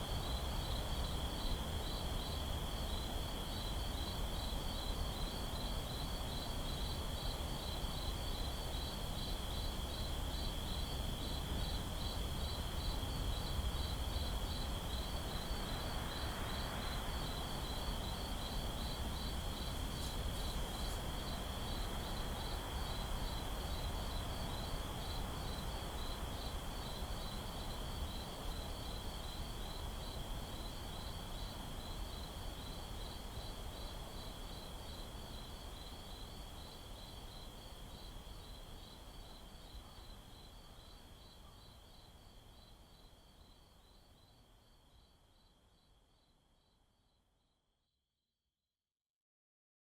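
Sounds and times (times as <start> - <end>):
crickets chirping: 10.4 - 46.7.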